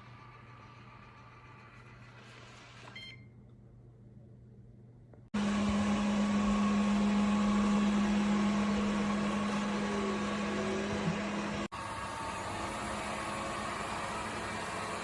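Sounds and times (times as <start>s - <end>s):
robot vacuum cleaner running: 5.4s - 15.0s.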